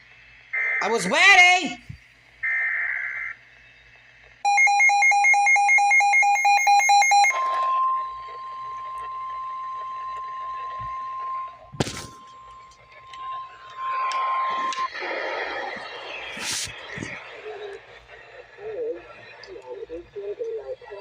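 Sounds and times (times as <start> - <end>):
steady alarm tone: 4.4 - 18.4
rapid electronic beeping: 4.5 - 21.0.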